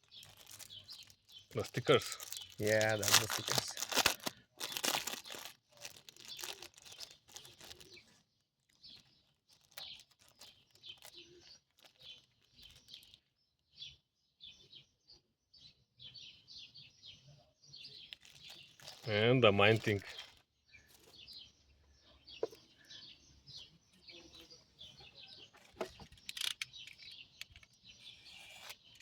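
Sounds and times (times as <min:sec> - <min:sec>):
plastic packaging crinkling: 0:00.0 - 0:13.3, 0:18.0 - 0:21.3.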